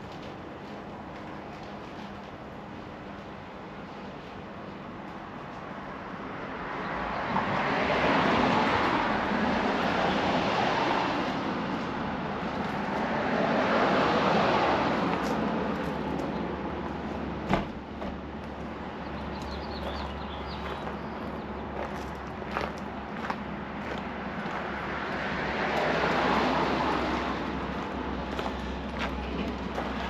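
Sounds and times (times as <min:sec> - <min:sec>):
vehicles passing: 0:04.3 - 0:30.0.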